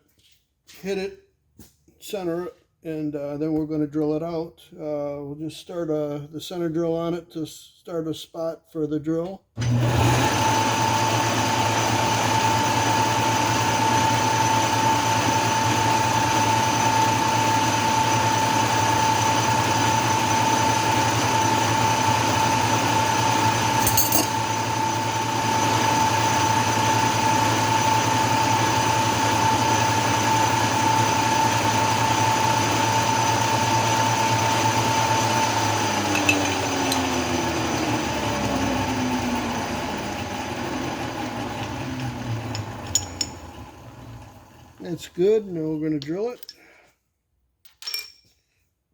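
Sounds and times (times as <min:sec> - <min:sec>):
metal lathe whining: 0:09.6 - 0:45.2.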